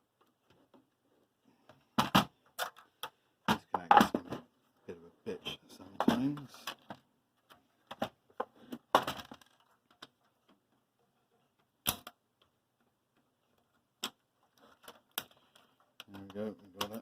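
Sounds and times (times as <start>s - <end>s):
plastic clip clicking and snapping: 11.8s - 12.2s.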